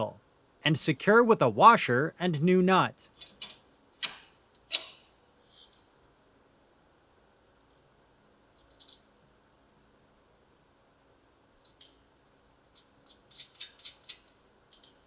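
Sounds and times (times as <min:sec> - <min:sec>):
metallic clicks of bolt and nut: 0:03.1 - 0:06.2, 0:12.8 - 0:15.0.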